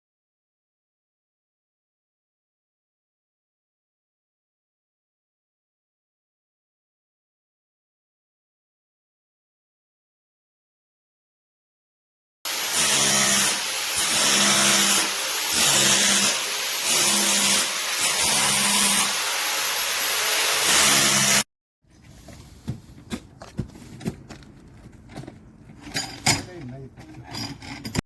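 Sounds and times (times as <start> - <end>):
hammer drill into concrete: 12.5 - 21.5.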